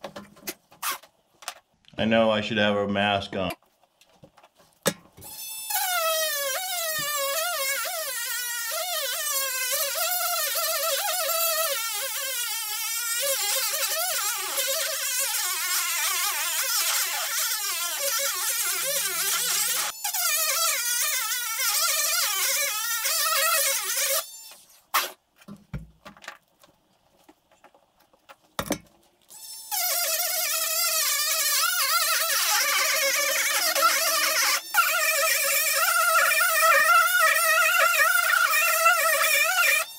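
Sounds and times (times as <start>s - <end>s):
rotary tool whining: 13.2s - 24.8s.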